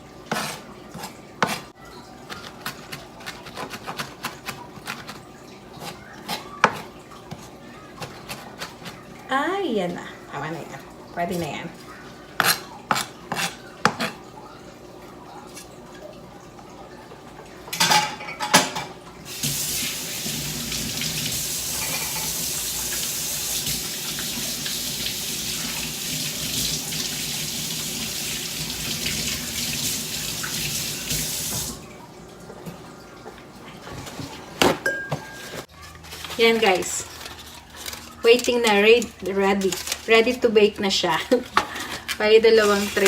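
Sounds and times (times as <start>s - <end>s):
tap running water into sink: 19.3s - 33.4s.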